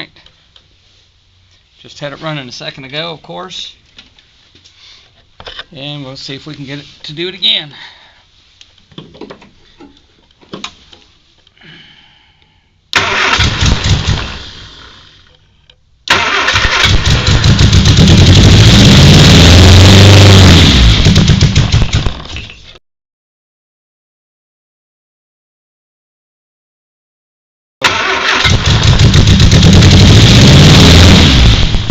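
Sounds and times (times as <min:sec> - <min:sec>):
car engine starting and revving: 0:13.0 - 0:15.2, 0:16.1 - 0:22.3, 0:27.8 - 0:31.9.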